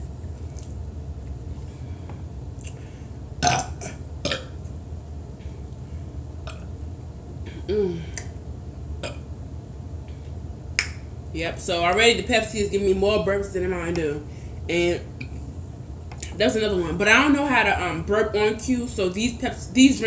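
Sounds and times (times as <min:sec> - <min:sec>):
woman burping: 0:03.4 - 0:04.5, 0:07.5 - 0:08.2, 0:09.0 - 0:09.2.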